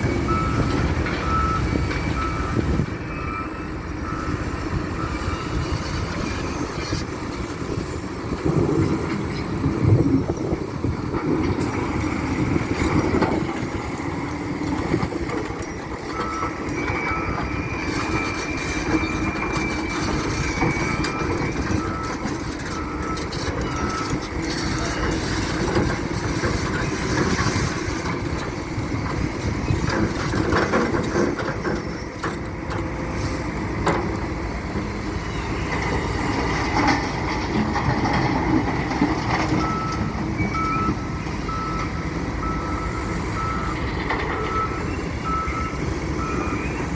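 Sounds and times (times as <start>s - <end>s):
reversing alarm beeping: 0.0s - 6.8s, 15.6s - 25.6s, 39.4s - 46.9s
diesel engine under load: 0.0s - 46.9s.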